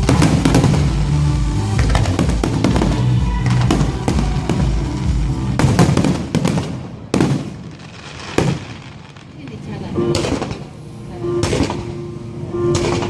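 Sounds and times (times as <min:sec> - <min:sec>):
music: 0:00.0 - 0:06.5, 0:09.9 - 0:13.0
fireworks bursting and crackling: 0:00.0 - 0:13.0
sharp bangs: 0:00.0 - 0:13.0.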